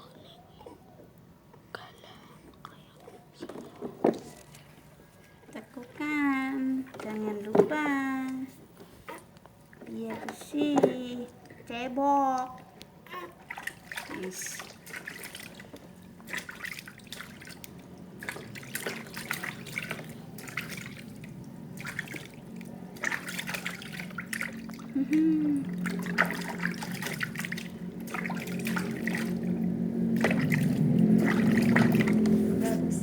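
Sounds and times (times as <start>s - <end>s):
low steady hum: 0.0s - 33.0s
water splashing and pouring: 13.4s - 25.0s, 25.6s - 32.6s.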